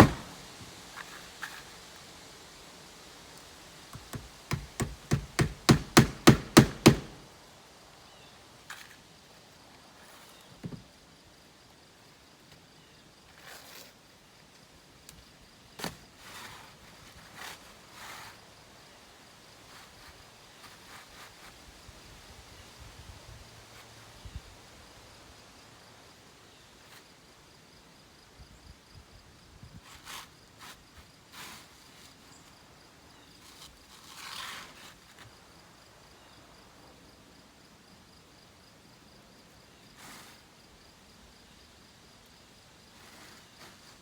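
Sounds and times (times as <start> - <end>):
hammer nailing shingles: 0.0 - 0.6, 4.0 - 7.2.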